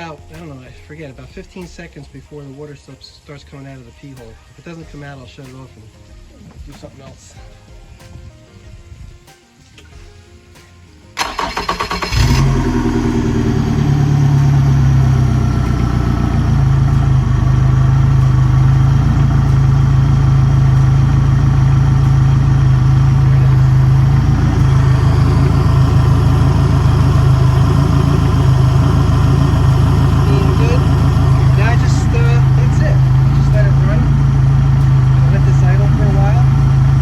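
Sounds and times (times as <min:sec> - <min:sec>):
outboard motor cranking and idling: 0:11.2 - 0:37.0.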